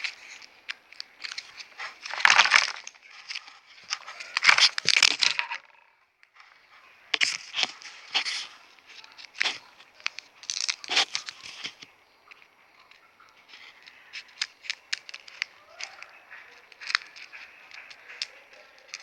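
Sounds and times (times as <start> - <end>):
plastic packaging crinkling and tearing: 0.0 - 5.7, 7.2 - 19.0
sharp clicks: 8.9 - 19.0.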